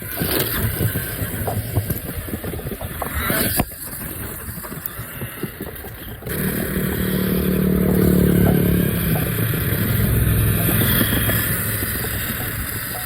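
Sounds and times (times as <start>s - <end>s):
rattling rolling noise: 0.0s - 13.0s
steady motor hum: 5.2s - 13.0s.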